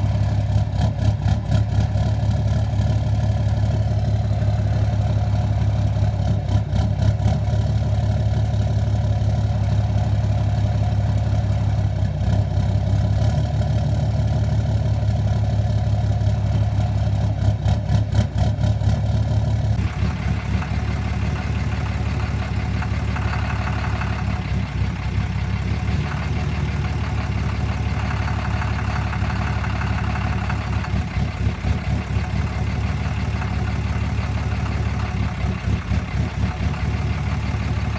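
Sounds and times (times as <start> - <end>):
diesel engine idling rough: 0.0 - 37.9
engine knocking: 0.0 - 37.9.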